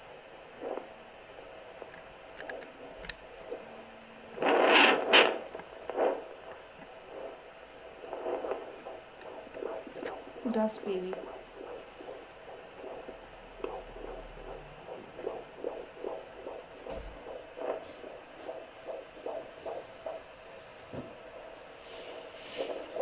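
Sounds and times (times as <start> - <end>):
rapid heartbeat pulses: 0.0 - 23.0.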